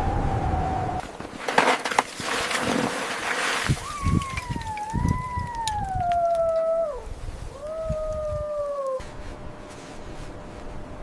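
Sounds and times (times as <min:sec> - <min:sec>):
wolf howling: 0:03.8 - 0:09.0.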